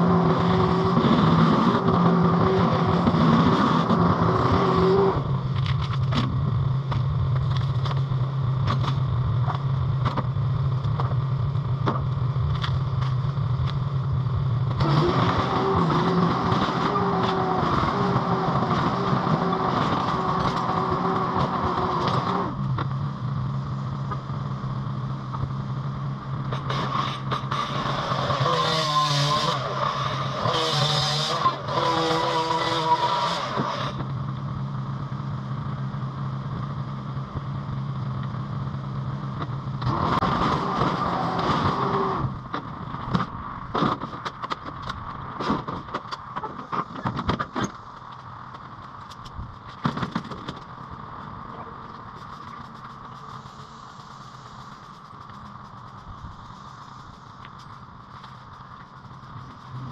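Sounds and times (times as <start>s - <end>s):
skid steer engine revving: 0.0s - 6.4s, 14.7s - 22.7s, 26.3s - 34.1s, 39.7s - 42.5s.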